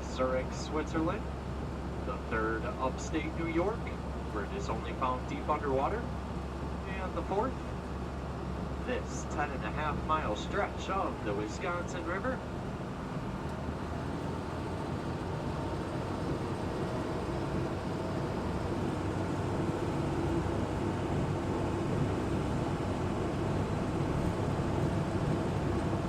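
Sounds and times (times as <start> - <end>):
vehicle engine droning: 11.4 - 26.0.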